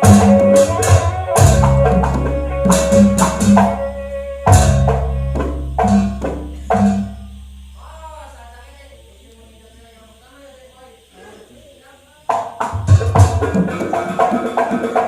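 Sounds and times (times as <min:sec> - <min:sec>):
drum and percussion strikes: 0:00.0 - 0:08.0, 0:12.3 - 0:15.0
deep ringing low strokes: 0:00.0 - 0:09.9.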